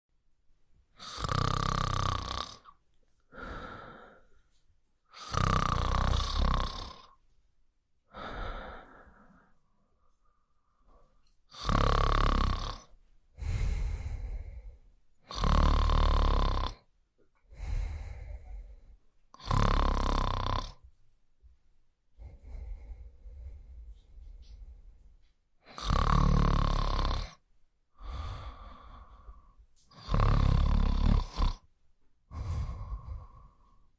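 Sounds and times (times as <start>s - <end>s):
person snoring: 1.0s - 4.3s, 5.1s - 7.2s, 11.5s - 16.9s, 17.5s - 20.8s, 22.2s - 25.0s, 25.6s - 27.4s, 28.0s - 31.7s, 32.3s - 33.9s.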